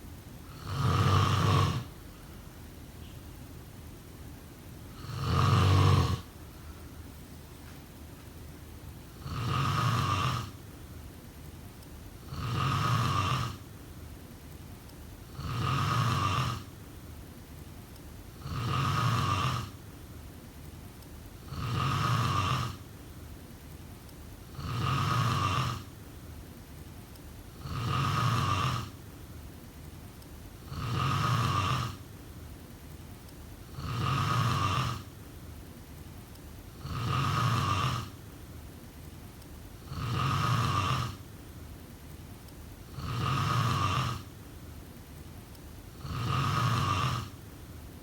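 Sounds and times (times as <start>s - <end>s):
person snoring: 0.5s - 1.9s, 4.9s - 6.3s, 9.2s - 10.6s, 12.2s - 13.6s, 15.3s - 16.7s, 18.4s - 19.8s, 21.4s - 22.8s, 24.5s - 25.9s, 27.6s - 29.0s, 30.6s - 32.0s, 33.7s - 35.1s, 36.8s - 38.2s, 39.8s - 41.2s, 42.9s - 44.3s, 46.0s - 47.4s.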